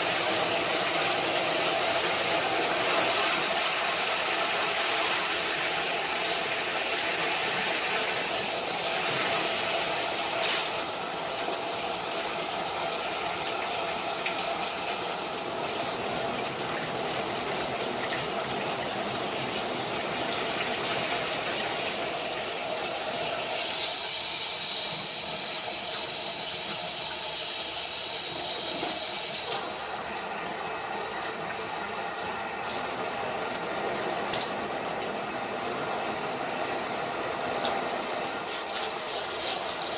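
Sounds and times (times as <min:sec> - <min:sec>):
water spraying from shower head: 0:06.2 - 0:11.0, 0:23.4 - 0:30.3, 0:38.3 - 0:39.9.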